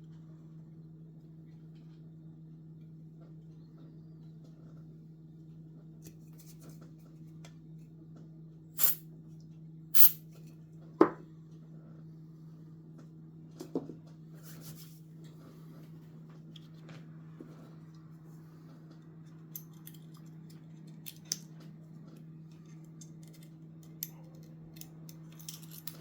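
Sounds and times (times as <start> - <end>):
low electrical hum: 0.0 - 26.0
short scratchy hisses: 8.8 - 9.0, 10.0 - 10.2.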